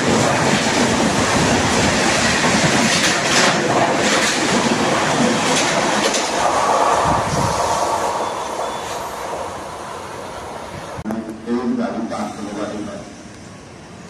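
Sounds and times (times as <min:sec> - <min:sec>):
train wheels clattering over rails: 0:00.0 - 0:09.6.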